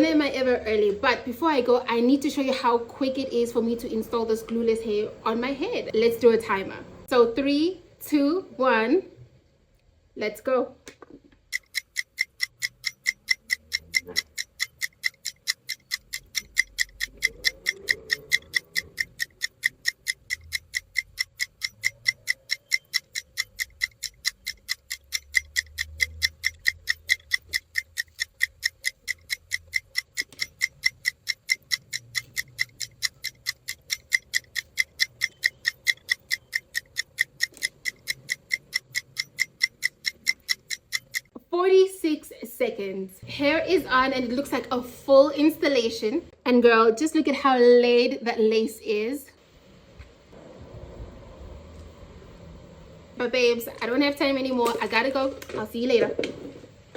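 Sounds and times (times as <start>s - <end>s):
timer ticking: 0.0s - 7.2s, 11.4s - 46.3s, 53.2s - 56.3s.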